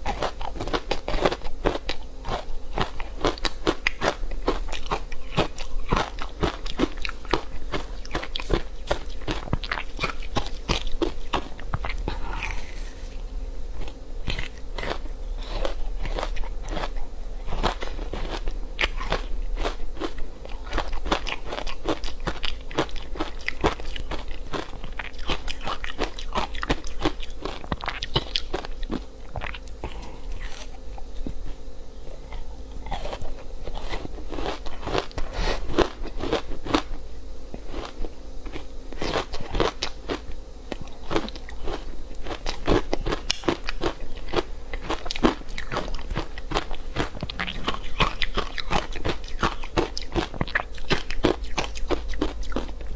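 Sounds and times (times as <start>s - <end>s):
chewing crunchy ice: 0.0s - 13.2s, 13.8s - 37.0s, 37.6s - 52.9s.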